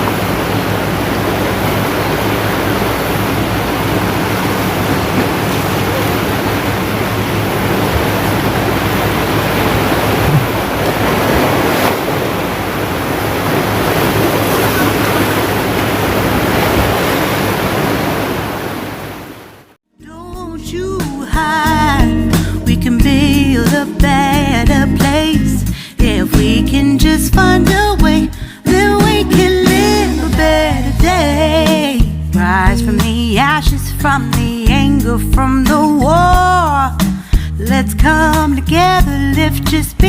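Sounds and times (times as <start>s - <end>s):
surf washing on sandy beach: 0.0s - 19.8s.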